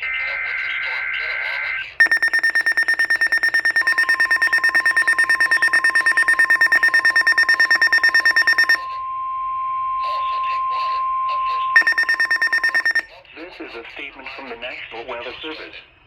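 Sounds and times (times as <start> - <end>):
rapid high alarm beeps: 2.0 - 8.9, 11.8 - 13.1
steady warning tone: 2.0 - 9.3, 11.8 - 13.1.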